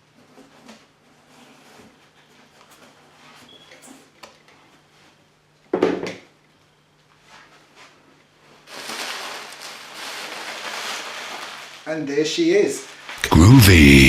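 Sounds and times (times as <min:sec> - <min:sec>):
plastic wrapping rustling: 0:08.6 - 0:13.1.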